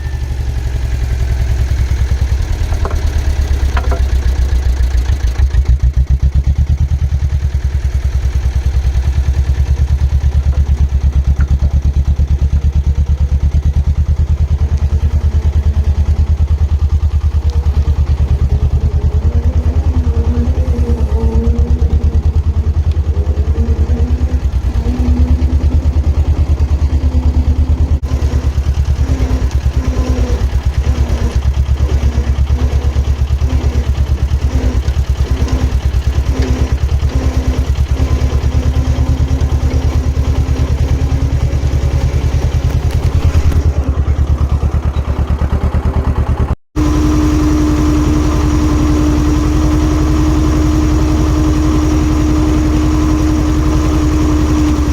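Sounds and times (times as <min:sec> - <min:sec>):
pulsing machine tone: 0:00.0 - 0:05.2, 0:14.8 - 0:45.2, 0:46.8 - 0:54.9
diesel engine rumbling: 0:00.0 - 0:54.9.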